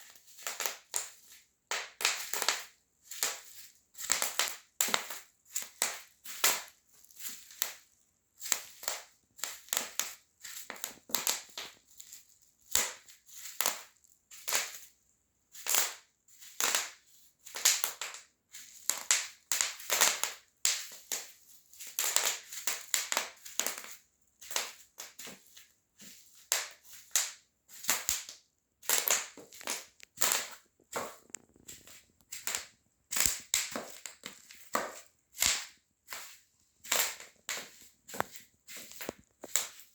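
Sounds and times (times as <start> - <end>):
bubble wrap popping under heels: 0.0 - 14.9, 15.6 - 39.9.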